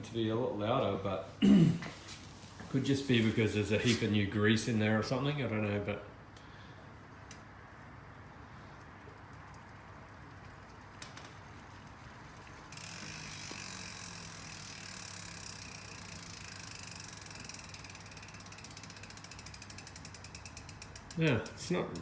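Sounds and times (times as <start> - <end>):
freewheeling hub ticking buzz: 8.6 - 22.0
bicycle hub click: 8.7 - 22.0.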